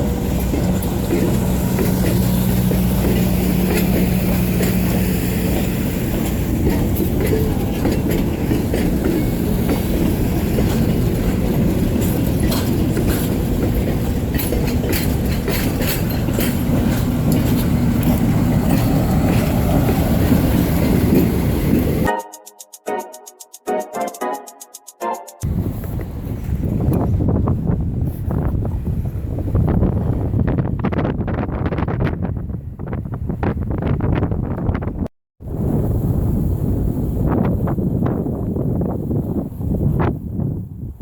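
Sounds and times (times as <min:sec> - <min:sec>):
train rumbling past: 0:00.0 - 0:22.1
wheels clicking over rail joints: 0:00.0 - 0:22.1
train engine tone: 0:00.0 - 0:25.6.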